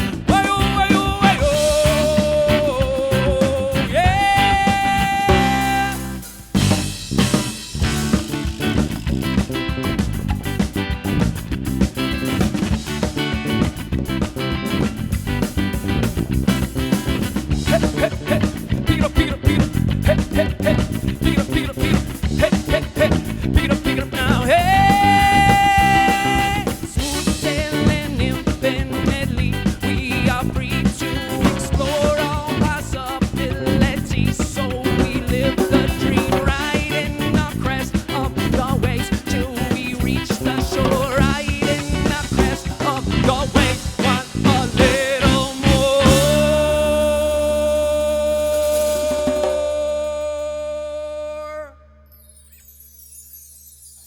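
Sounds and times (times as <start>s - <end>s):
live folk-rock band: 0.0s - 51.2s.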